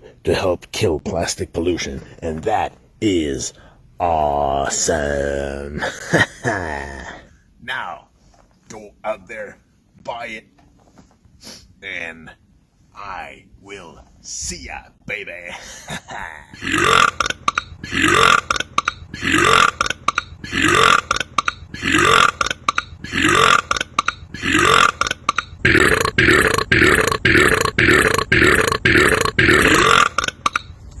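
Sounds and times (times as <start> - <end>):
man burping: 4.0 - 7.3, 16.0 - 30.6.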